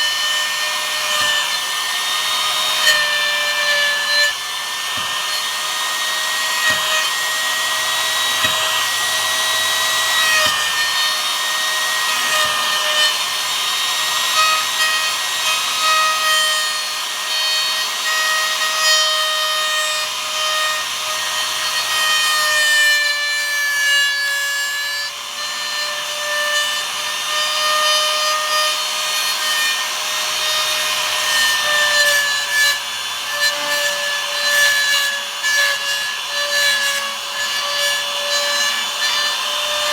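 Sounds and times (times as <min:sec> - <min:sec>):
router cutting wood: 0:00.0 - 0:39.9.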